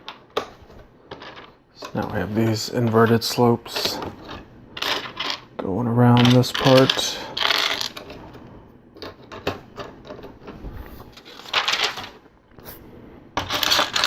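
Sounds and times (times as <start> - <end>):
plastic bricks clicking and rattling: 1.1 - 2.2, 3.7 - 5.4, 6.1 - 8.2, 11.2 - 12.2, 13.4 - 14.0.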